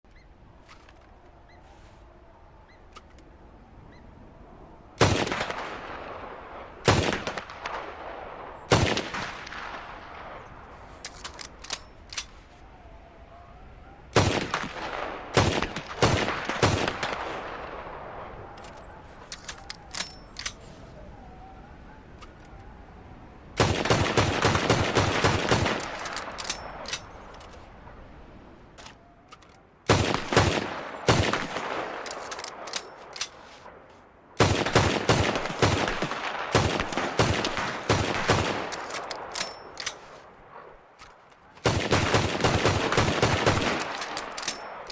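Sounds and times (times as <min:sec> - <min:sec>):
pistol shots echoing: 0:29.9 - 0:33.1, 0:34.4 - 0:40.1, 0:41.6 - 0:44.9.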